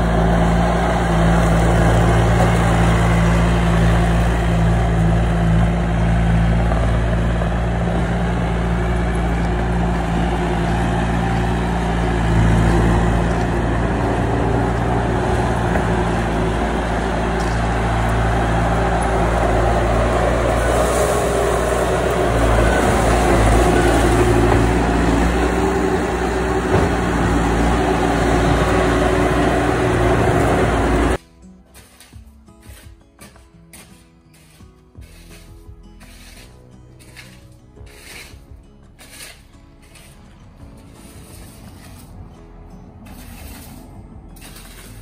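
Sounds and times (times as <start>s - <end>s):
engine running loudly: 0.0s - 31.2s.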